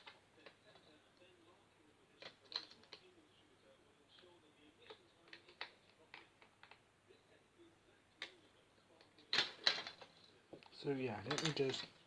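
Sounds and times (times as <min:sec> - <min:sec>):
plastic parts clicking: 0:02.2 - 0:03.0, 0:09.1 - 0:12.0.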